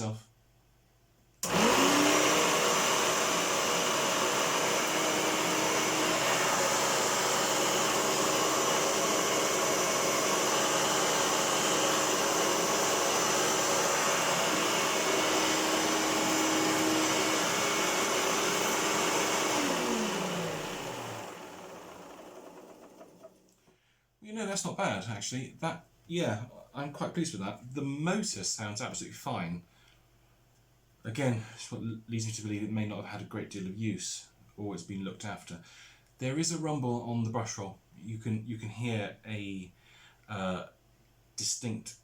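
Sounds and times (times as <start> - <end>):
vacuum cleaner motor running: 1.4 - 23.5.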